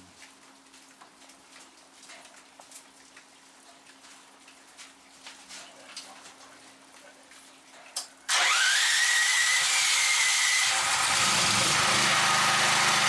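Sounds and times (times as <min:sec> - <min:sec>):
angle grinder motor whine: 0:08.3 - 0:13.0.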